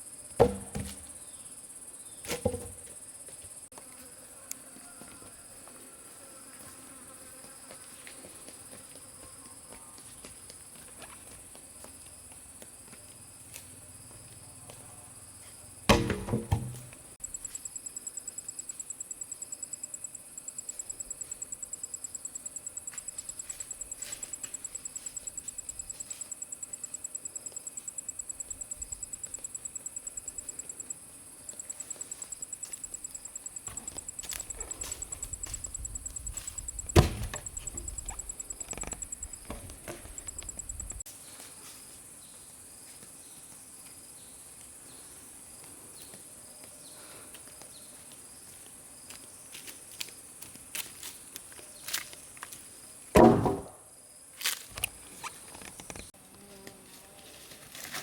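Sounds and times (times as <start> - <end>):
insects droning: 0.0 - 58.0
knocks of wood: 0.4 - 1.1, 2.2 - 2.9, 15.9 - 17.0, 36.8 - 40.1, 53.2 - 53.8
loud knock with ringing: 15.9 - 16.8, 36.9 - 37.9, 53.2 - 53.8.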